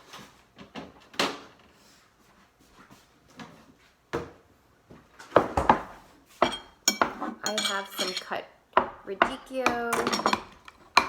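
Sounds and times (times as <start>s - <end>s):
kitchen items clattering: 5.2s - 11.0s
kitchen items knocking: 5.3s - 11.0s.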